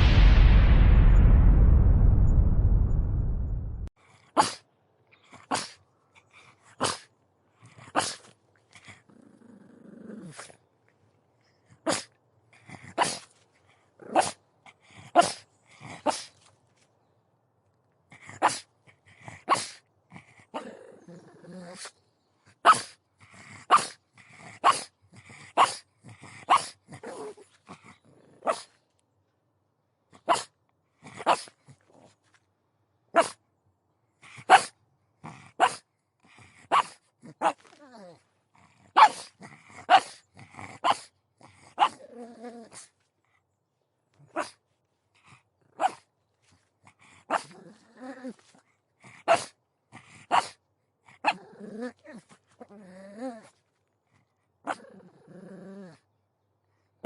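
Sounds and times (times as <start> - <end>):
dog growling: 7.6 - 10.6, 20.1 - 22.0, 36.3 - 43.0, 46.9 - 53.7, 54.6 - 56.1
dog barking: 34.5 - 34.7, 39.0 - 39.3.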